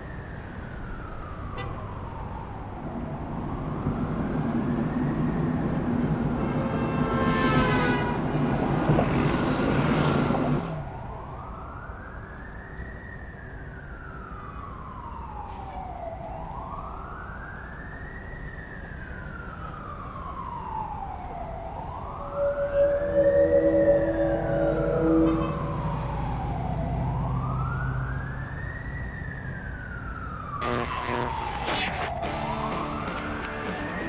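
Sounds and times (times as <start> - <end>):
emergency siren wailing: 0.0 - 34.0
steady low tones: 21.4 - 27.0, 30.6 - 34.0
loud vehicle rumbling: 21.4 - 28.4, 30.6 - 34.0.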